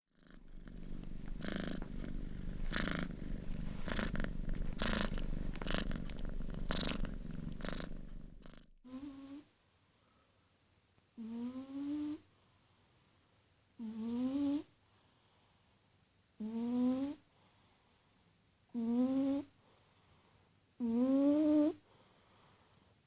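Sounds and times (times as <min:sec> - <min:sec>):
cat snoring: 0:00.1 - 0:09.4, 0:11.2 - 0:12.2, 0:13.8 - 0:14.7, 0:16.4 - 0:17.2, 0:18.7 - 0:19.5, 0:20.8 - 0:22.0.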